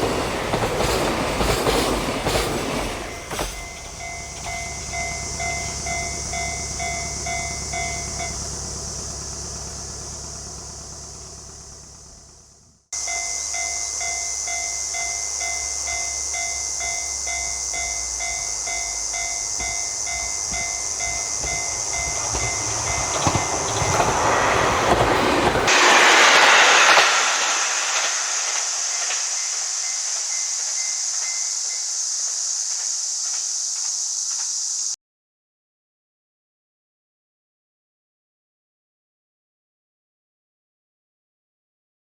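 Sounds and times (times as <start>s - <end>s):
train rumble and wheel noise: 0.0s - 34.9s
steady high hiss: 0.0s - 35.0s
level crossing warning bell: 0.1s - 25.6s, 28.9s - 32.3s.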